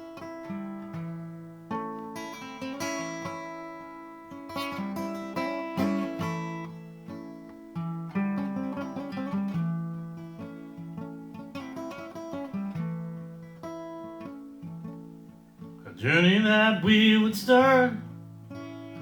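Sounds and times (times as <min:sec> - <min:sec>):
acoustic guitar chords: 0:00.0 - 0:19.0.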